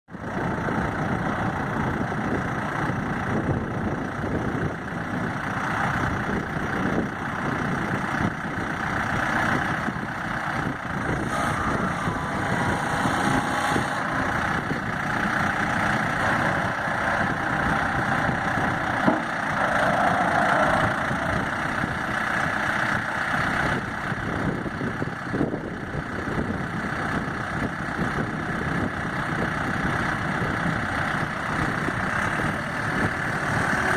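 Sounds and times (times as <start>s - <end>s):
diesel engine idling: 0.1s - 33.9s.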